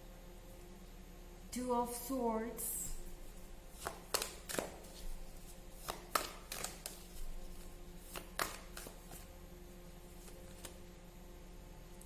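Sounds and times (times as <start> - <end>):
cards tapping and flicking: 3.7 - 9.3, 10.1 - 10.8.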